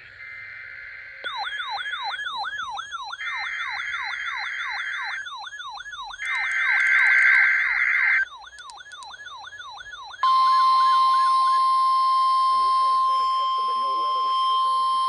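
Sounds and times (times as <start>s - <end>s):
harsh buzzing data bursts: 0.0s - 1.4s
electronic siren yelping: 0.0s - 15.0s.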